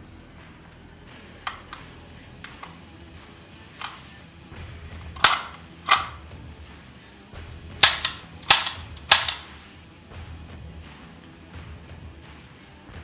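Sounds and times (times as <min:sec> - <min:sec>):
air rifle shots: 0:01.5 - 0:02.8, 0:03.7 - 0:04.2, 0:05.0 - 0:06.3, 0:07.8 - 0:09.7.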